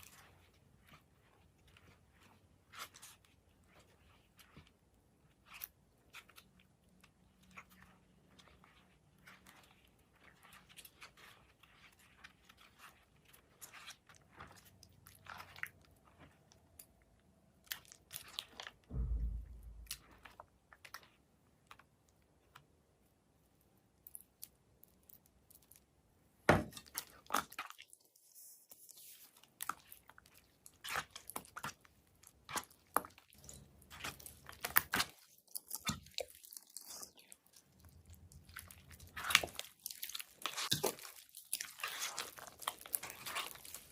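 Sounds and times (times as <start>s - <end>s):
low thump: 18.9s - 20.2s.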